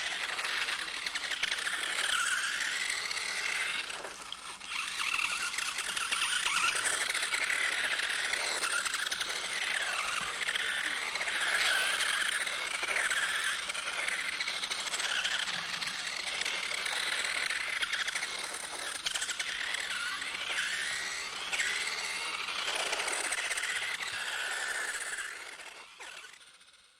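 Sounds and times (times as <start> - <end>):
toy electric motor whining: 0.0 - 26.9.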